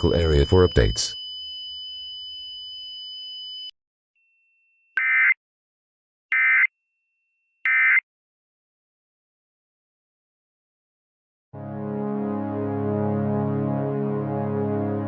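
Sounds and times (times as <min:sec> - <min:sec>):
faint steady high tone: 0:00.0 - 0:01.2.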